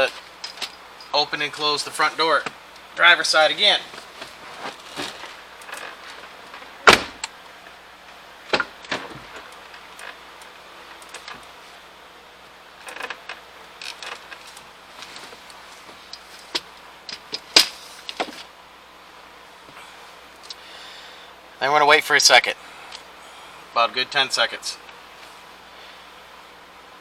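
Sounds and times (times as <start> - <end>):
heavy car door thuds: 6.8 - 7.3.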